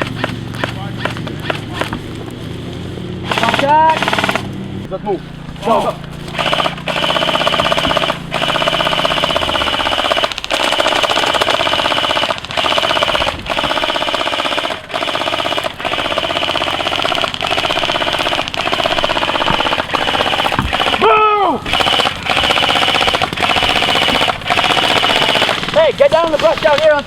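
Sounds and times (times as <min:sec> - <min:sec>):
airsoft guns firing rapid bursts: 0:00.0 - 0:02.0, 0:03.2 - 0:04.5, 0:06.3 - 0:27.0.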